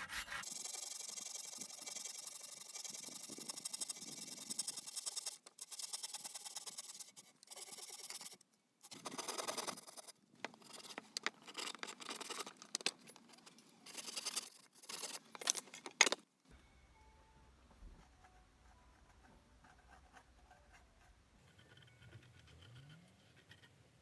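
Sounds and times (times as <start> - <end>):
hand tool scraping wood: 0.0 - 6.1.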